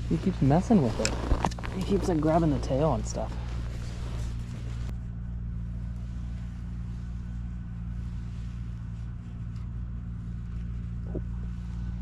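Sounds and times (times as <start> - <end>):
steady low engine drone: 0.0 - 12.0.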